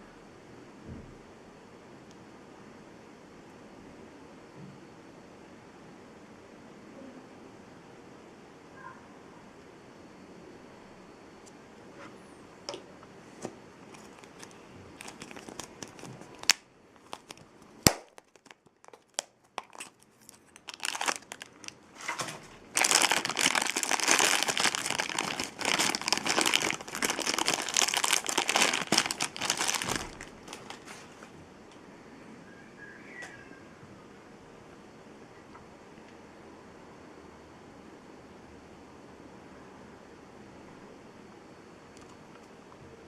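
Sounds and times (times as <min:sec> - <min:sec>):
plastic packaging clicks: 0:13.9 - 0:30.9
plastic bag crinkling and tearing: 0:13.9 - 0:31.1.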